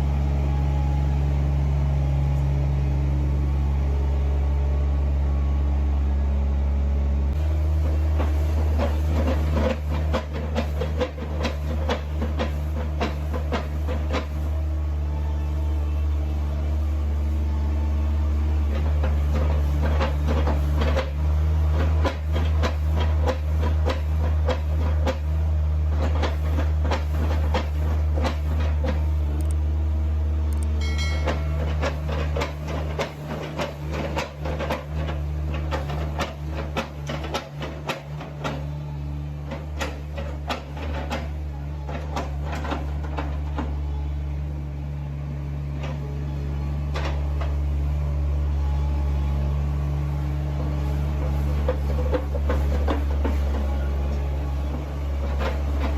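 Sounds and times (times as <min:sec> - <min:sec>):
heavy machine droning: 0:00.0 - 0:55.9
rattling and clanking: 0:07.4 - 0:14.5, 0:30.8 - 0:38.8.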